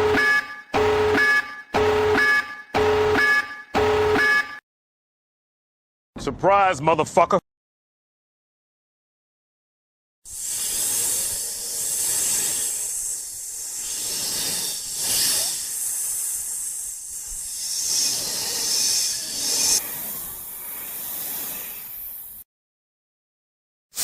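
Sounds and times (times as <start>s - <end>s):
long hissing noise: 10.3s - 22.4s.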